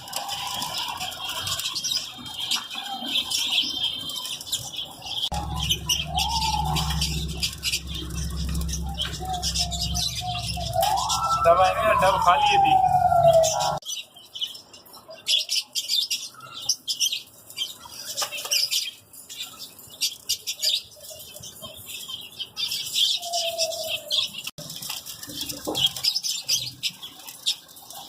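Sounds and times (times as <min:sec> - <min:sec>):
wings fluttering: 0:00.0 - 0:13.8, 0:24.6 - 0:28.0
small birds chirping: 0:00.0 - 0:28.0.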